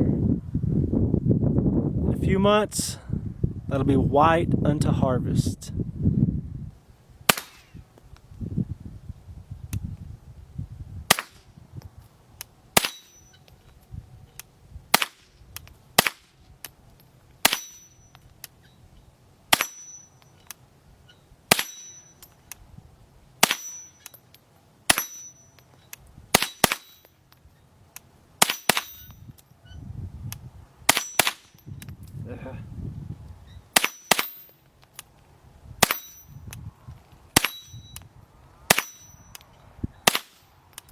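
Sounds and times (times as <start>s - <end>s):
bullet ringing on steel target: 12.8s - 13.5s, 17.4s - 18.2s, 19.5s - 20.3s, 21.5s - 22.4s, 23.4s - 24.3s, 24.9s - 25.7s, 28.4s - 29.3s, 30.9s - 31.8s, 33.8s - 34.6s, 35.8s - 36.4s, 37.4s - 38.0s, 38.7s - 39.4s.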